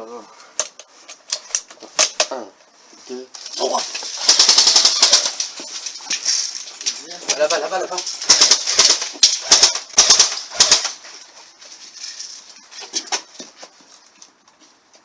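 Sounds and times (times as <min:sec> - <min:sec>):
airsoft guns firing: 0:04.1 - 0:05.5, 0:08.2 - 0:11.0.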